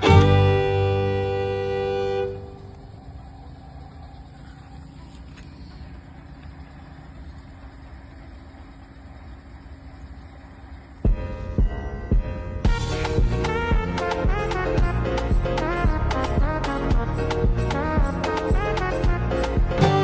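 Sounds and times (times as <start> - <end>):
loud horn-like tone: 0.0 - 2.8, 17.8 - 20.0
low steady rumble with hum: 0.0 - 20.0.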